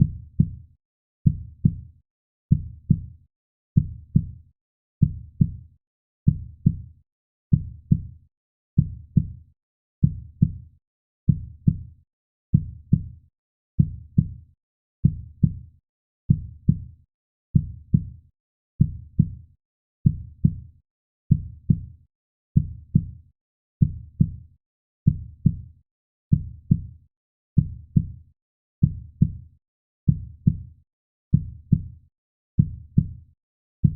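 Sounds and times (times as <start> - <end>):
heartbeat lub-dub thumps: 30.1 - 30.6.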